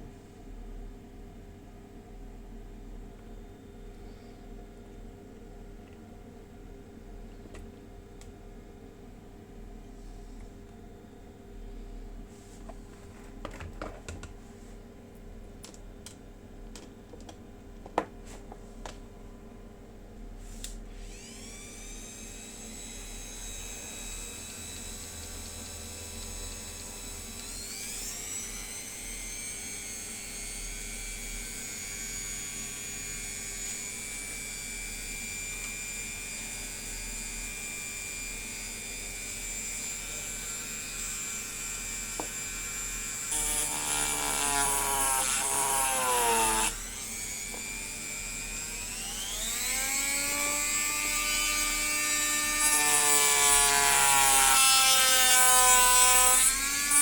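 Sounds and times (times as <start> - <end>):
small electric motor whining: 21.0 - 57.0.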